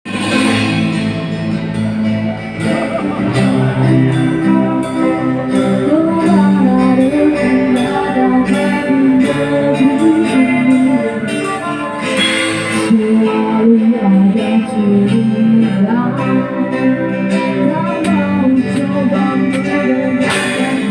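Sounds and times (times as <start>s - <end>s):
live reggae band playing: 0.0s - 20.9s.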